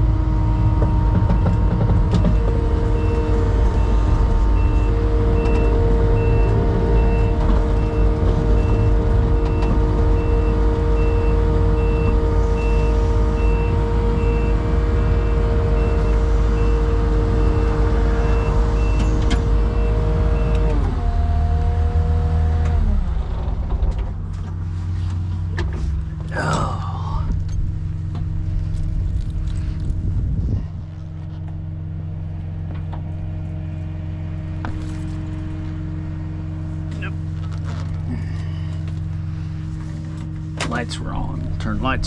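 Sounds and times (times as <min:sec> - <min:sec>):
diesel engine running: 0:00.0 - 0:42.0
backup alarm beeping: 0:00.6 - 0:20.6.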